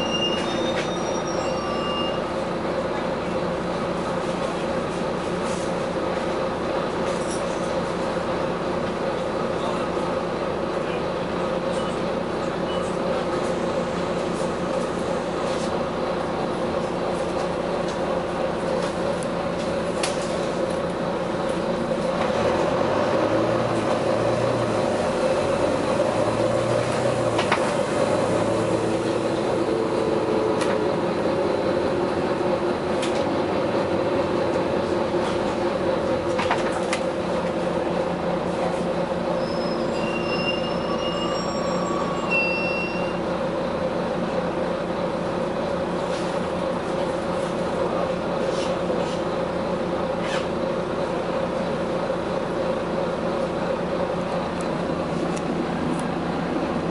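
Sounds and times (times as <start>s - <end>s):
high squeaks: 39.4s - 43.2s.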